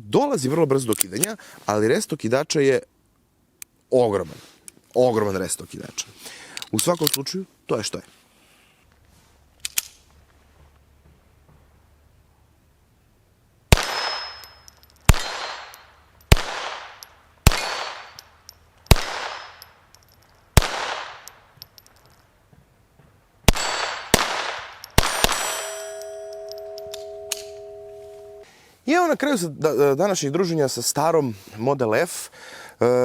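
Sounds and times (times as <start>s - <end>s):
pistol shots: 13.7s - 14.4s, 15.1s - 18.2s, 18.9s - 19.6s, 20.6s - 21.3s, 23.5s - 25.8s.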